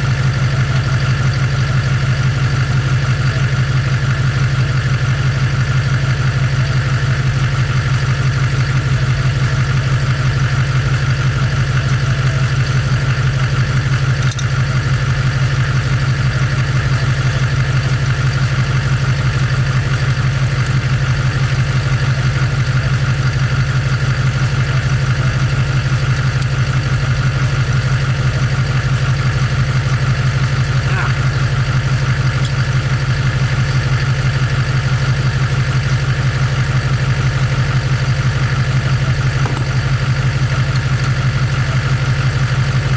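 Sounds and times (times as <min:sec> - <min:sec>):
engine humming steadily: 0:00.0 - 0:42.9
short knock: 0:39.4 - 0:39.9.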